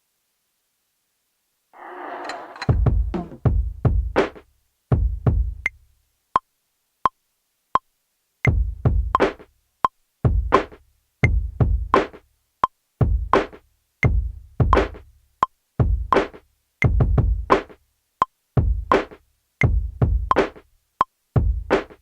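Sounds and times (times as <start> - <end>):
booming kick drums: 2.7 - 4.2, 5.0 - 5.6, 8.5 - 9.2, 10.3 - 10.6, 11.3 - 11.9, 13.0 - 13.3, 15.8 - 16.1, 18.6 - 18.9.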